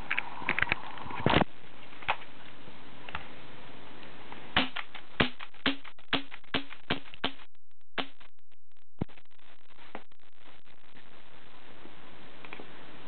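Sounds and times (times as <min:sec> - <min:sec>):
silenced airsoft gun shots: 0:04.6 - 0:07.4.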